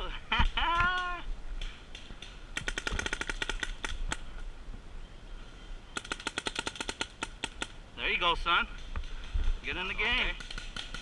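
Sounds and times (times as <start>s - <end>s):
paintball markers firing: 1.9s - 4.2s, 6.0s - 7.8s, 10.2s - 11.0s.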